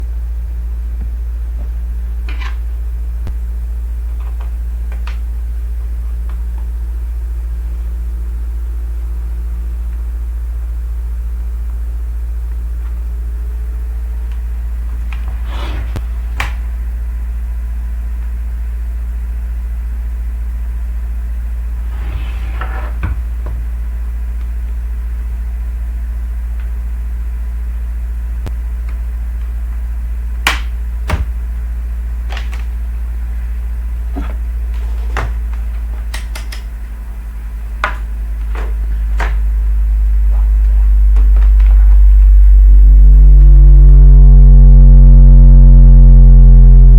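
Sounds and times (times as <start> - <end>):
low electrical hum: 0.0 - 46.9
small clicks and knocks: 35.0 - 36.7.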